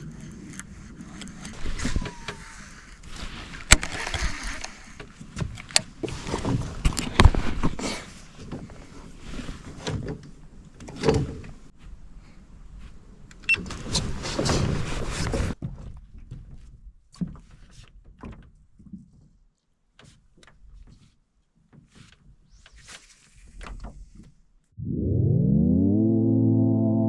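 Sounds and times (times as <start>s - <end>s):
fishing reel whirring: 1.5s - 5.0s.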